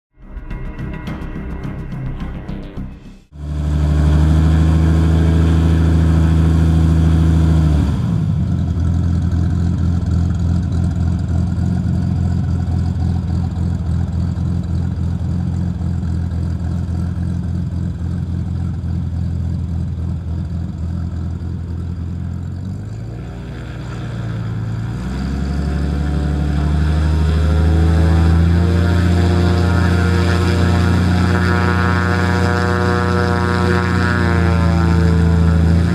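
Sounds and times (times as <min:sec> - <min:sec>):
plane engine and propeller: 0:00.2 - 0:35.9.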